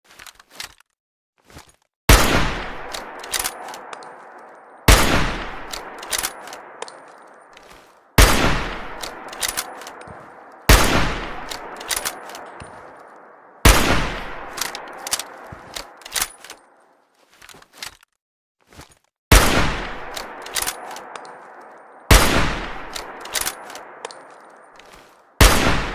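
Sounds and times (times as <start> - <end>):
rifle shots with echo: 2.1 - 16.8, 19.3 - 25.9
metallic rifle action clicks: 2.8 - 4.7, 5.4 - 8.0, 8.7 - 13.4, 14.3 - 16.8, 19.9 - 22.0, 22.7 - 25.2.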